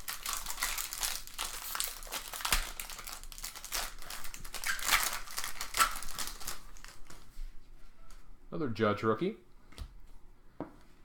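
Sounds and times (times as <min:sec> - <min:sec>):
card wrappers crinkling: 0:00.0 - 0:07.3.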